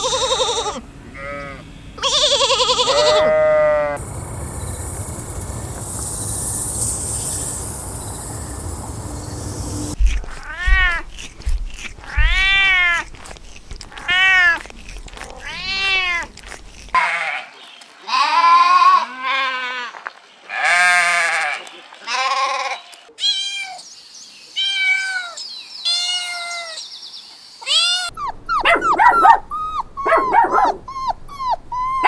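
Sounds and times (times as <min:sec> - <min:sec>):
high wavering animal calls: 0:00.0 - 0:10.0, 0:27.6 - 0:32.0
background noise: 0:00.0 - 0:32.0
cat meowing: 0:10.3 - 0:11.1, 0:12.0 - 0:13.1, 0:13.9 - 0:14.6, 0:15.4 - 0:16.3, 0:27.6 - 0:32.0.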